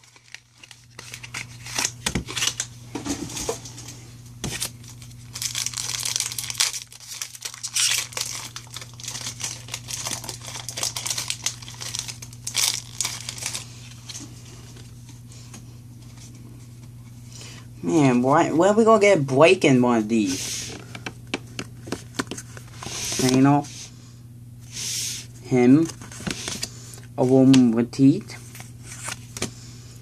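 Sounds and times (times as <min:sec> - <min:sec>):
foil wrapper tearing and crinkling: 0:00.0 - 0:02.7, 0:04.4 - 0:14.2.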